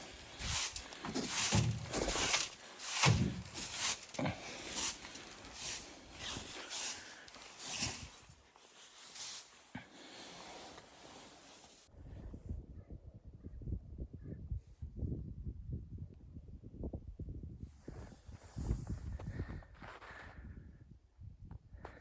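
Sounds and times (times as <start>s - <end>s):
footsteps crunching in snow: 0.0s - 11.9s.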